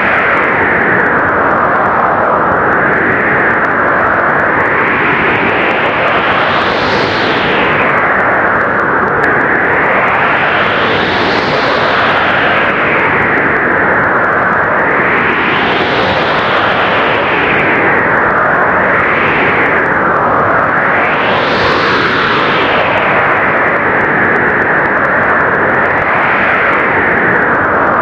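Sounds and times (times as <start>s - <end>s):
blizzard wind gusting: 0.0s - 28.0s.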